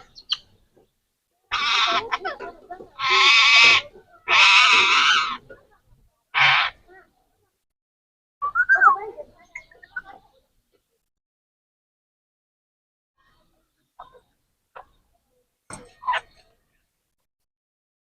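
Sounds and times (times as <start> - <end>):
parrot squawking: 3.0 - 5.4.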